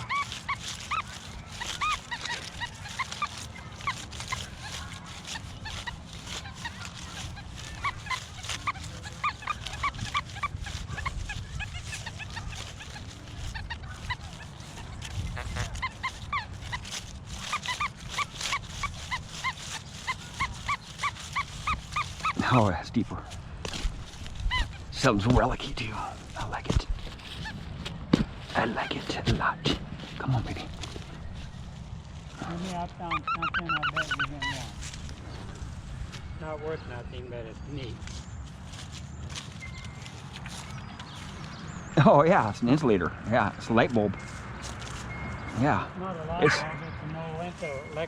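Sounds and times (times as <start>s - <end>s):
dog yipping: 0.0s - 22.4s, 24.5s - 24.9s, 33.0s - 34.7s, 46.4s - 46.8s.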